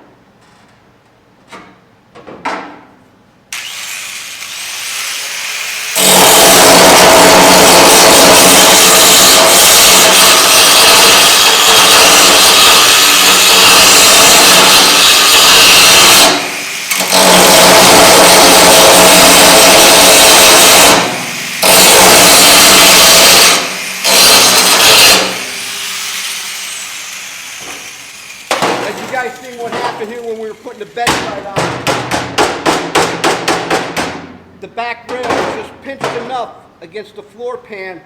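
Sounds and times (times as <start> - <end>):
angle grinder grinding steel: 3.6 - 31.6.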